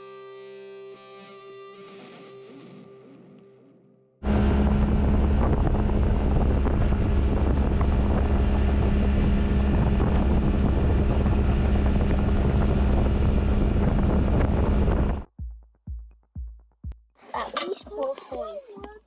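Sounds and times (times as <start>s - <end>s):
outboard motor running: 4.2s - 15.3s
wind rumble on microphone: 4.2s - 15.3s.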